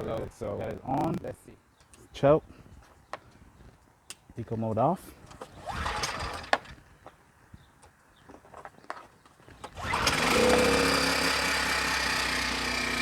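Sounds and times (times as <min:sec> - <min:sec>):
generator engine running: 0:09.8 - 0:13.0.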